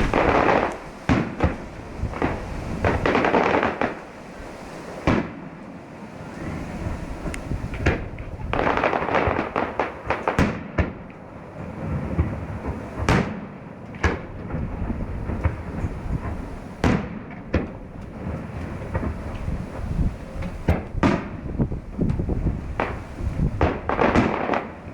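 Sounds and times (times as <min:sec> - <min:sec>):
rumbling echoes: 0:00.0 - 0:03.0
fireworks bangs and crackling: 0:00.0 - 0:24.9.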